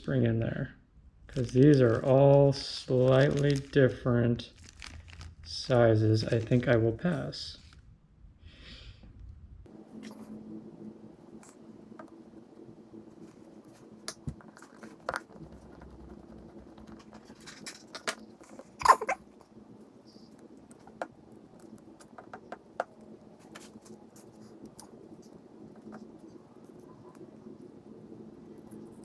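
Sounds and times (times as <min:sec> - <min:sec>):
steady low hum: 0:05.2 - 0:29.0
metal parts clicking and tapping: 0:14.1 - 0:19.1.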